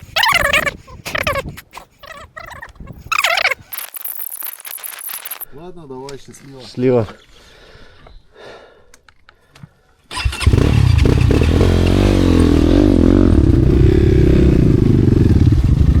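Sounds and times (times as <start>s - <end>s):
motorcycle engine revving: 10.1s - 16.0s.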